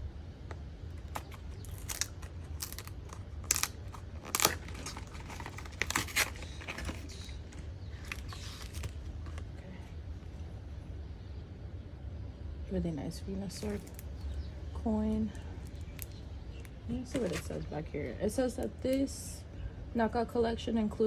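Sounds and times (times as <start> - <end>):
plastic wrap crinkling and tearing: 1.0 - 9.4
cardboard box handled: 1.0 - 9.5.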